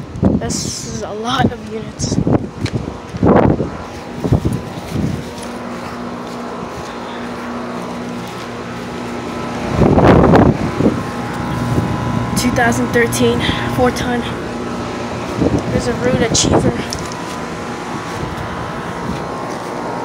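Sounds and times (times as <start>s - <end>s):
air conditioner unit humming: 0.0s - 20.0s.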